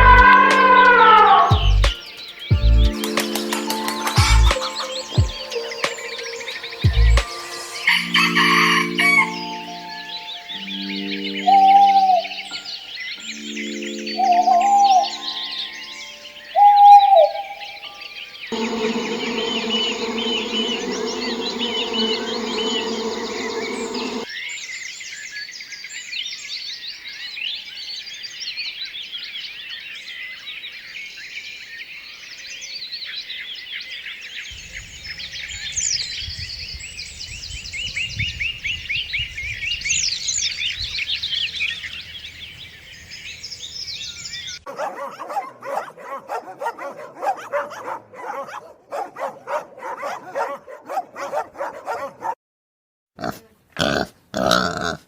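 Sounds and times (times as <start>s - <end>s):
small animals chirping: 18.6s - 24.3s
pigs grunting and oinking: 53.2s - 55.0s.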